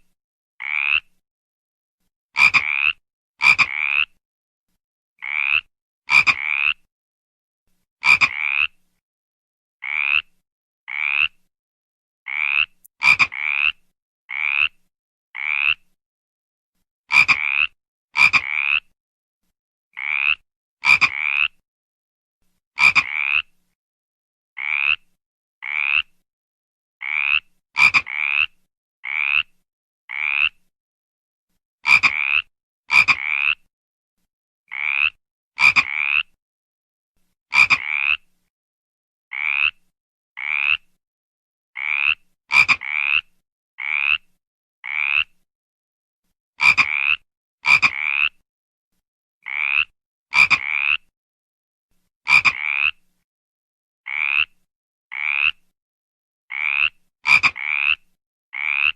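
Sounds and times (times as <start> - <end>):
frog croaking: 0.6 - 1.1, 2.4 - 4.2, 5.2 - 6.9, 8.0 - 8.8, 9.8 - 10.3, 10.9 - 11.4, 12.3 - 14.8, 15.4 - 15.8, 17.1 - 18.9, 20.0 - 21.6, 22.8 - 23.5, 24.6 - 26.1, 27.0 - 29.5, 30.1 - 30.6, 31.8 - 33.6, 34.7 - 36.3, 37.5 - 38.2, 39.3 - 39.8, 40.4 - 40.9, 41.8 - 45.3, 46.6 - 48.4, 49.4 - 51.1, 52.3 - 53.0, 54.1 - 54.5, 55.1 - 55.6, 56.5 - 58.0, 58.6 - 58.9.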